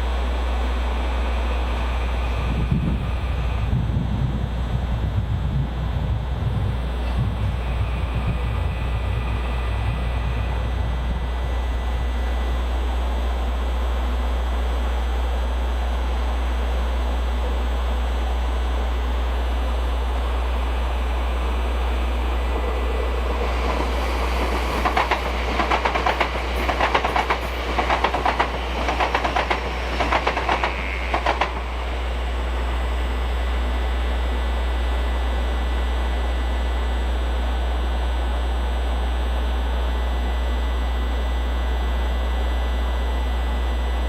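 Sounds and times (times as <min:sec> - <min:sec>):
steady low hum: 0:00.0 - 0:44.0
train wheels clicking over rail joints: 0:22.6 - 0:31.7.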